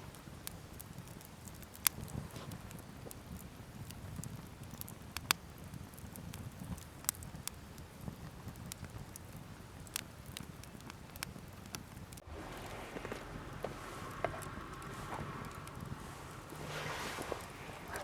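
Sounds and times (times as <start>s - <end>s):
campfire crackling and popping: 0.0s - 18.0s.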